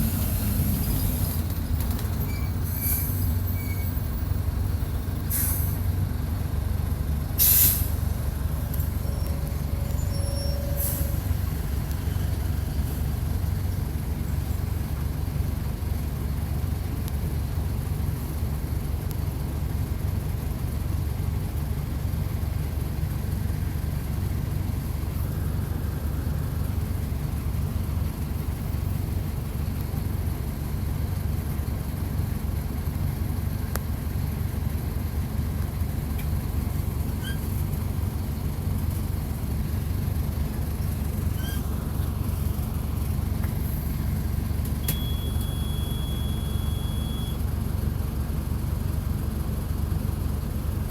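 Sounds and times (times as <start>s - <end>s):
diesel bus engine running: 0.0s - 50.9s
air brake hisses: 5.3s - 5.9s, 7.4s - 8.0s, 10.4s - 11.3s.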